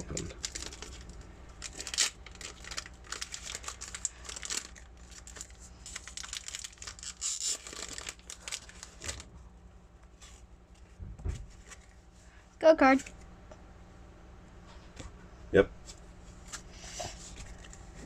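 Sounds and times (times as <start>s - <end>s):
foil wrapper crinkling and tearing: 0.0s - 9.3s.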